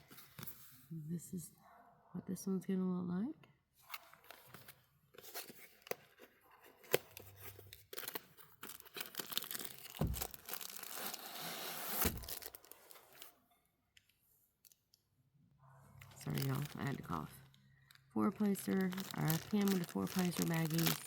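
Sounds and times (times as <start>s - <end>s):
packaging crinkling: 3.8s - 13.4s, 16.0s - 21.0s.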